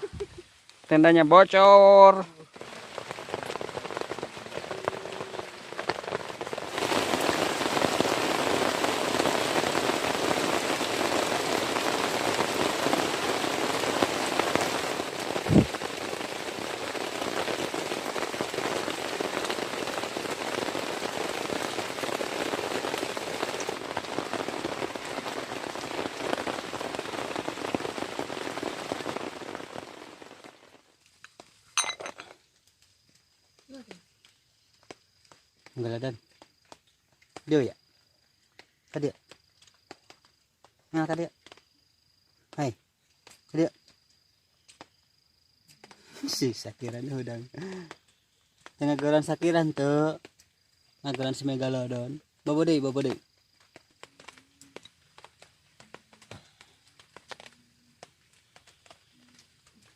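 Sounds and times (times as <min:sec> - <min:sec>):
heavy rain falling: 0:00.0 - 0:32.4, 0:45.8 - 0:59.9.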